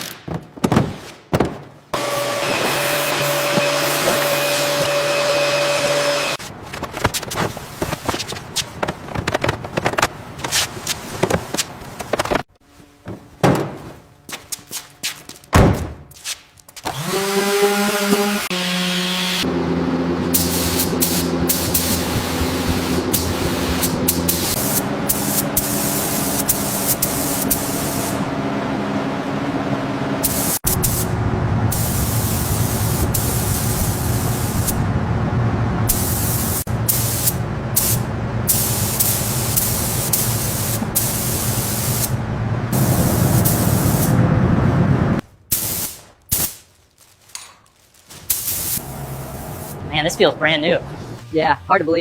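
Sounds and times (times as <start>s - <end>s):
low hum: 19.4s - 25.2s, 27.6s - 38.9s, 42.1s - 45.3s
spraying hiss: 20.3s - 28.2s, 31.7s - 34.8s, 35.9s - 42.1s, 42.8s - 44.2s, 45.5s - 46.6s, 48.2s - 49.8s.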